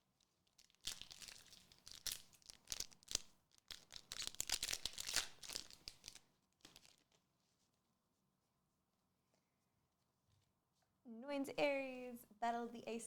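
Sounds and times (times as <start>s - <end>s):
wrapper tearing and crinkling: 0.1s - 7.2s.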